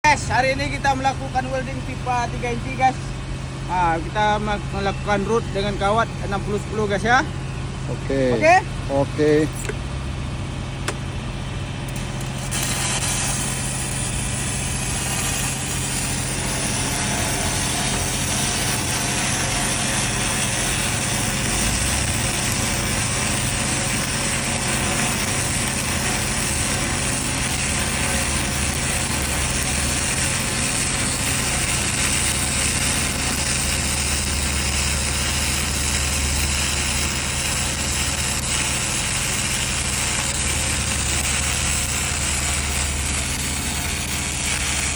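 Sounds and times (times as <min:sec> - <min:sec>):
engine hum: 0:00.0 - 0:44.9
welding arc crackling and hissing: 0:10.8 - 0:44.9.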